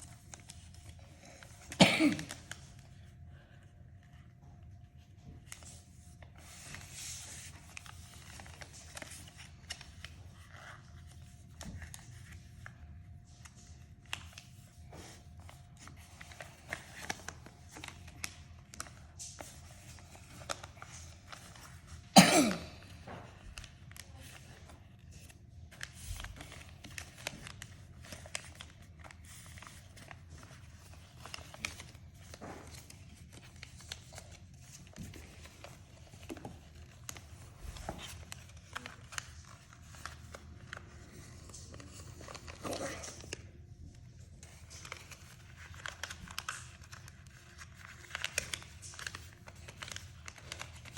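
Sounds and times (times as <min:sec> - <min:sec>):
person coughing: 0:01.7 - 0:02.4, 0:22.2 - 0:23.0
paper rustling and tearing: 0:22.7 - 0:43.6, 0:44.3 - 0:50.9.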